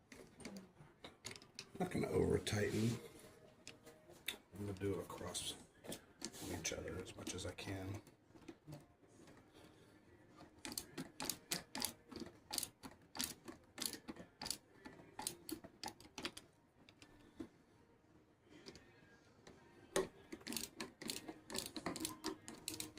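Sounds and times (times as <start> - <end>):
screwdriver metallic clicks: 10.6 - 14.6, 20.4 - 22.9.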